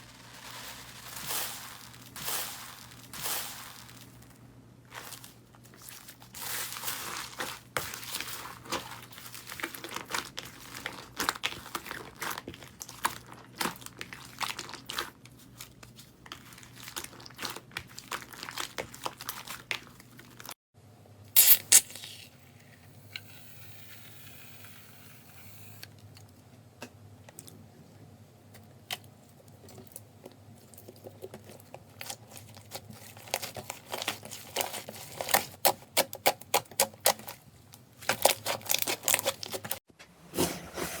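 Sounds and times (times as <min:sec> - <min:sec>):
loud slime pop: 0:21.4 - 0:22.2.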